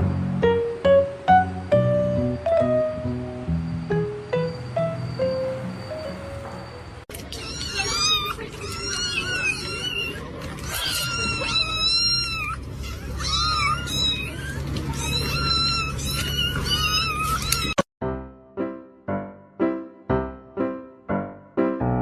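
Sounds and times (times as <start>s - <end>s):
cat meowing: 7.1s - 17.8s.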